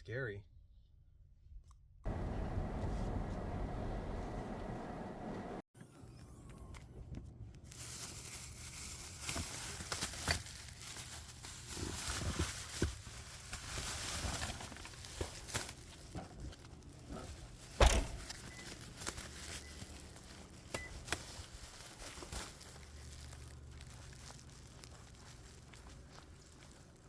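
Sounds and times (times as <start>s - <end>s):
rustling and crinkling: 7.1s - 27.0s
loud thump: 17.8s - 18.3s.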